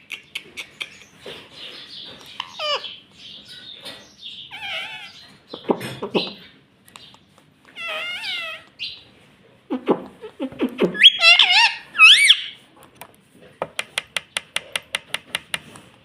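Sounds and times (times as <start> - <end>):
parrot chattering and squawking: 2.2 - 3.0, 4.5 - 6.4, 7.7 - 9.0, 9.7 - 12.6.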